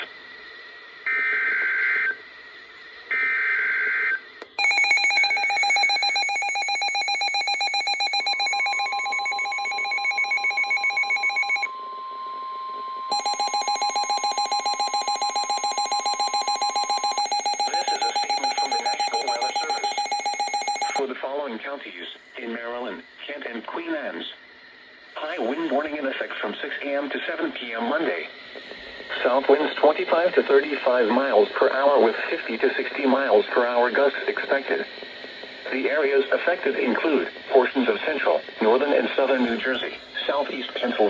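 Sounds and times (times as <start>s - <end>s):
pulsing buzzing alarm: 3.1s - 21.0s
steady high tone: 4.6s - 21.0s
digital data bursts: 13.1s - 21.0s.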